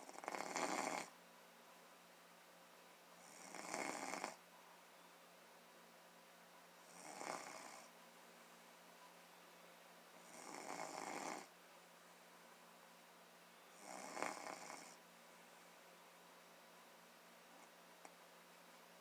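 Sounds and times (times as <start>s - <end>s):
person snoring: 0.0s - 1.1s, 3.2s - 4.4s, 6.9s - 7.9s, 10.2s - 11.5s, 13.8s - 15.0s.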